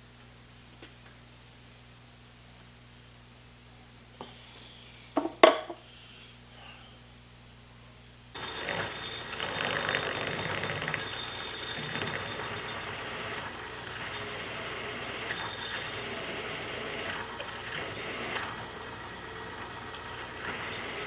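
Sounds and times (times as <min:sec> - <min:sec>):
machine running with high whine: 0:08.4 - 0:21.0.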